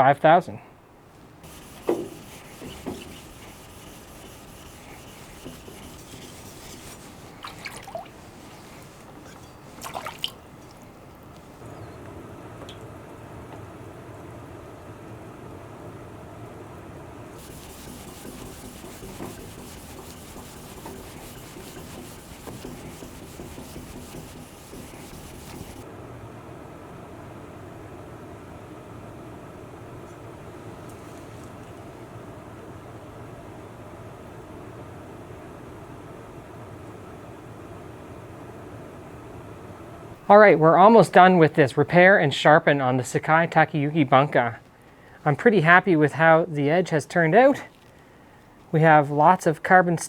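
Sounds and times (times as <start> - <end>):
knife scraping on whetstone: 1.4 - 9.8, 17.4 - 25.8.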